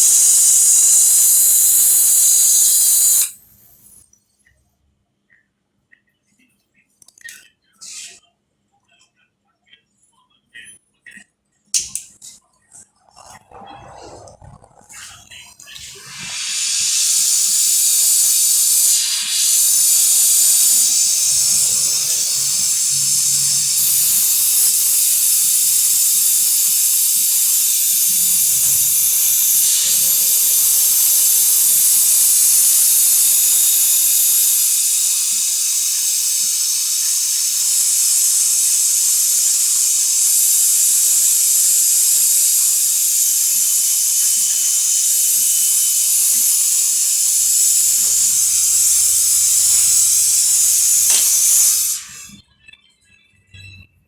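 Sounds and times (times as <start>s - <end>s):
gas hissing out: 0.0s - 4.0s, 13.4s - 52.4s.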